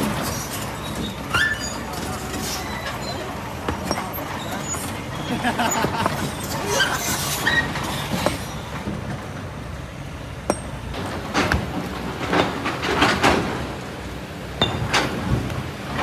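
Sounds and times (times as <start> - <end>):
excavator diesel engine: 0.0 - 16.0
stones and sand clattering: 2.6 - 9.0, 10.4 - 13.7.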